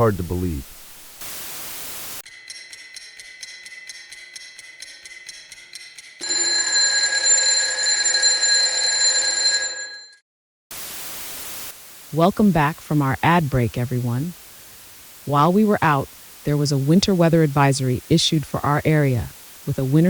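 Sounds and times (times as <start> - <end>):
rapid electronic ringing ticks: 2.2 - 10.2.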